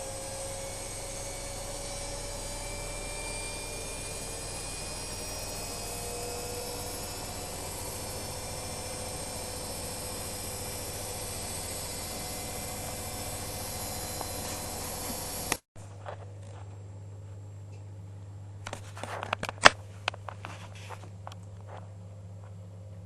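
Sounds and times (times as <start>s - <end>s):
whining tones: 0.0s - 15.7s
washing machine running: 0.0s - 17.8s
low hum: 0.0s - 23.0s.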